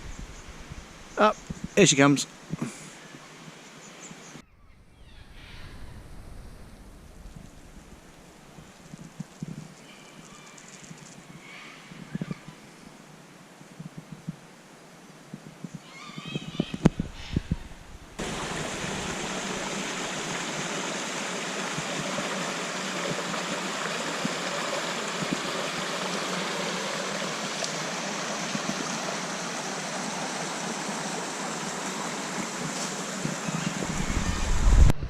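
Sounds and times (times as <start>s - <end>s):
creek water rushing over rocks: 18.2s - 34.8s.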